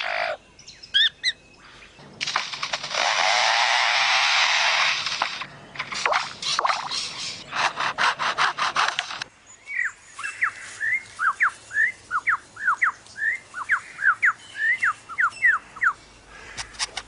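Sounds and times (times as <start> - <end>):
lyrebird mimicking chainsaw: 2.5 - 9.3.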